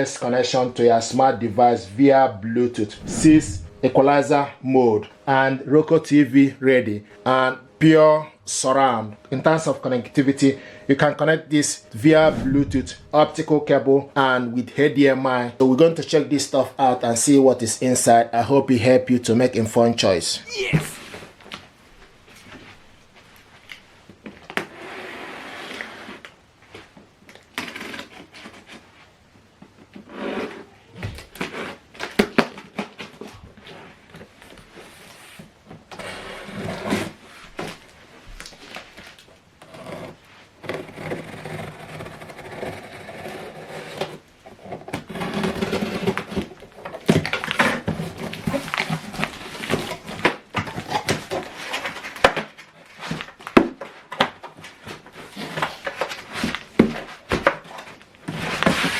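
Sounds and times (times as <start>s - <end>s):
cardboard packaging rustling: 44.5s - 58.9s.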